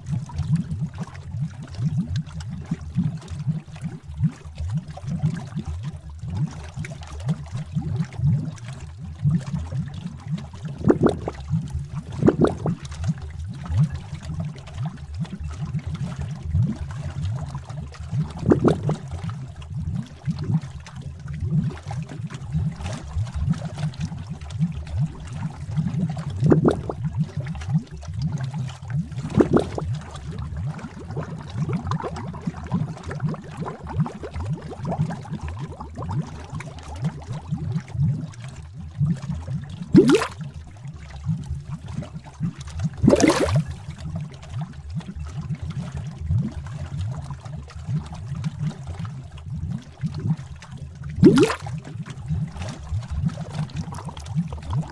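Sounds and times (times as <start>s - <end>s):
thick liquid bubbling: 0.0s - 54.9s
big bubble popping: 10.7s - 12.8s, 18.3s - 19.0s, 26.4s - 27.1s, 29.1s - 30.2s, 39.9s - 40.5s, 42.9s - 43.9s, 51.1s - 51.8s, 53.7s - 54.9s.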